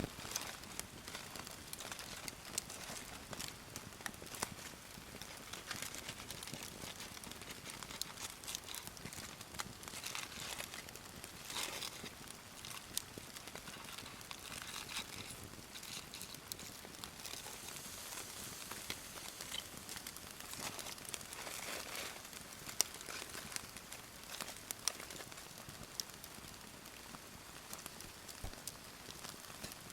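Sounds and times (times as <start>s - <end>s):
aluminium foil crinkling: 0.0s - 29.9s
campfire crackling and popping: 0.0s - 29.9s.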